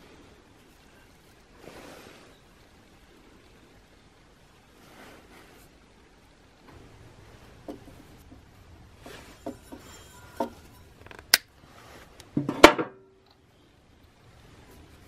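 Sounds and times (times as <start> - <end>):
metal tools clattering: 9.1 - 11.3.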